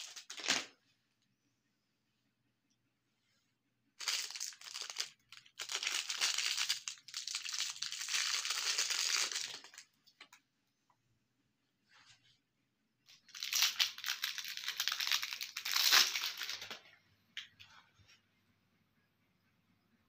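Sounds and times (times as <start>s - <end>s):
hard candy crunching in grinder: 4.0s - 9.8s.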